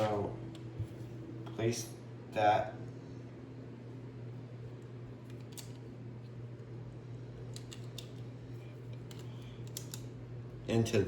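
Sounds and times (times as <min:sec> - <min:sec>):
steady low hum: 0:00.0 - 0:11.0
plastic pieces clicking: 0:07.5 - 0:08.2, 0:09.0 - 0:10.1.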